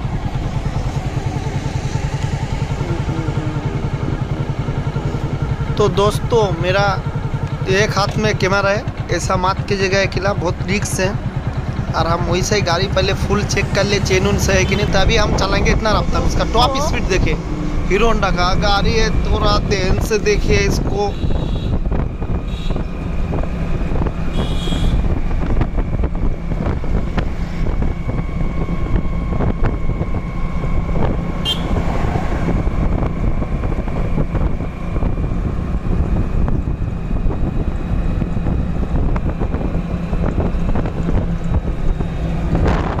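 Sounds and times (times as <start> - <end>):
motorcycle running at high speed: 0.0 - 43.0
wind buffeting microphone: 0.0 - 43.0.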